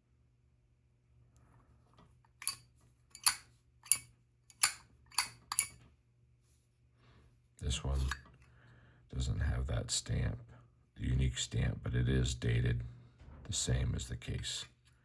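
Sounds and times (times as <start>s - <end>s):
faint steady hum: 0.0s - 15.0s
metallic lighter clicks: 3.2s - 5.7s.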